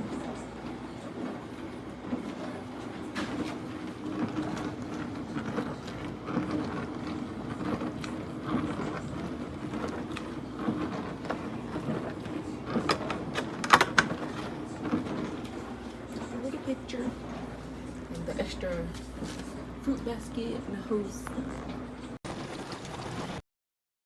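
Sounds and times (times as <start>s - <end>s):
steady mechanical hum: 0.0s - 22.2s.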